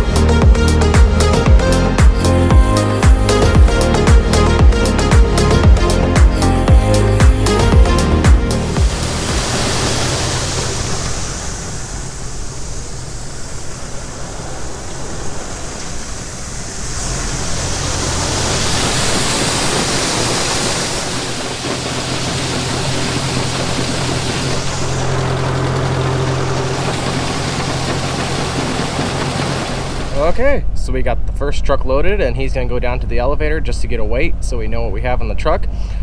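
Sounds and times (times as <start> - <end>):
auger motor hum: 5.6 - 30.8
corn pouring with rushing hiss: 8.6 - 30.3.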